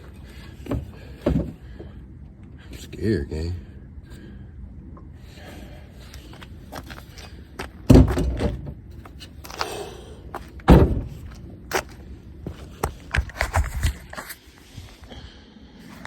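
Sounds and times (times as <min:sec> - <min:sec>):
heavy thuds: 0:06.4 - 0:08.8, 0:10.3 - 0:14.0.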